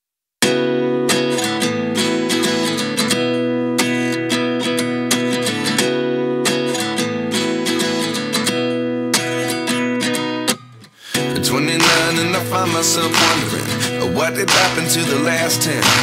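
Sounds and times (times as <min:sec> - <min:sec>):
strummed acoustic guitar: 0:00.4 - 0:16.0.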